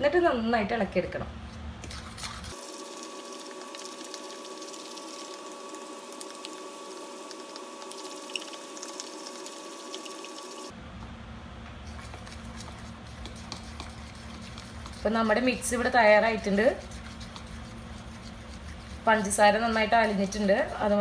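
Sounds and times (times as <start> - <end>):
steady hum: 0.0 - 21.0
spoon stirring batter in bowl: 11.8 - 21.0.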